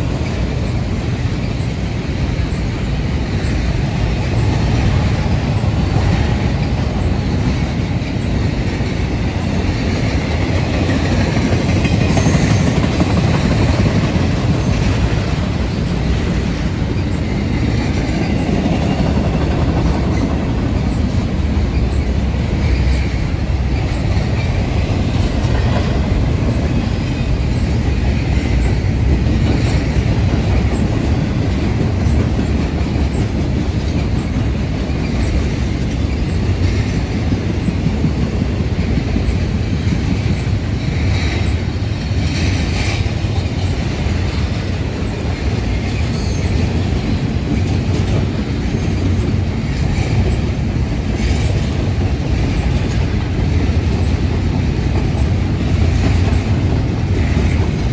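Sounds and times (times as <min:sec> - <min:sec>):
train wheels rumbling on rail: 0:00.0 - 0:57.9
wheels clacking over rail joints: 0:00.0 - 0:57.9
wheel squeal: 0:45.9 - 0:46.9.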